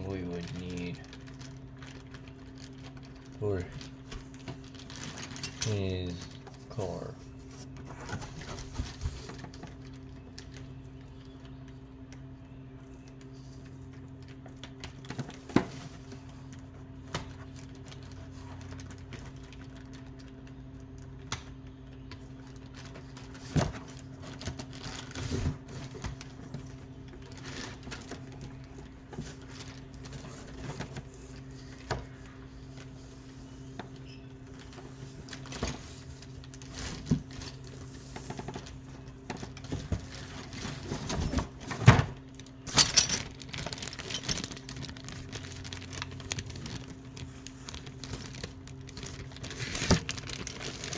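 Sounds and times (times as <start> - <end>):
low electrical hum: 0.0 - 50.9.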